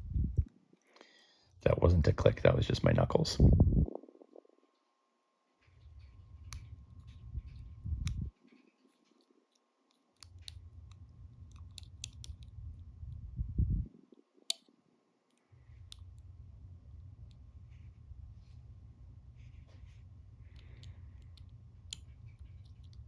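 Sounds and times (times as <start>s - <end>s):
low rumble of handling: 0.0s - 0.5s, 5.6s - 9.4s, 10.2s - 14.2s, 15.6s - 23.0s
lock pick clicking in lock: 11.5s - 12.5s.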